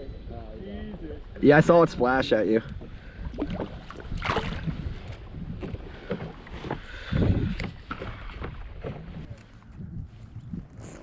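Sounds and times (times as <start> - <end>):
kayak hull knocks and splashes: 2.8 - 9.4.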